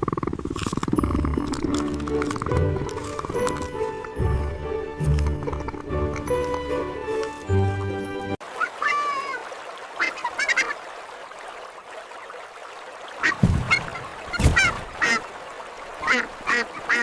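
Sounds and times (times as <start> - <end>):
waterfowl honking and quacking: 8.5 - 10.8, 13.2 - 15.3, 16.0 - 17.0.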